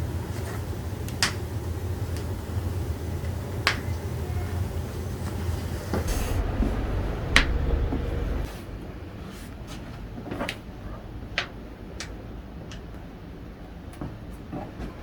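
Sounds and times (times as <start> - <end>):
low rumble: 2.6 - 10.1.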